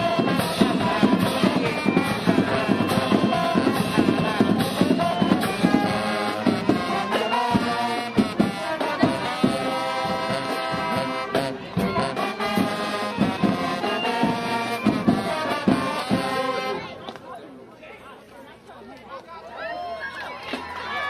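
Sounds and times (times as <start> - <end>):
brass horns holding chords: 0.0 - 16.8.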